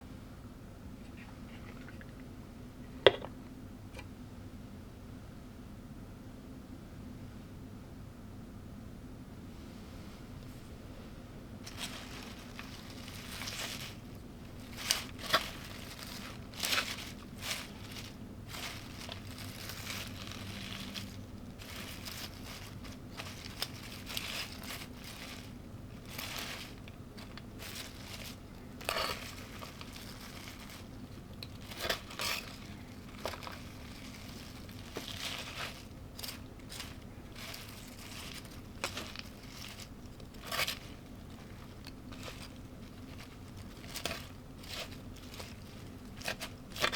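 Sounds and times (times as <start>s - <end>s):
steady low hum: 0.0s - 46.9s
kitchenware clicks and taps: 3.0s - 3.3s.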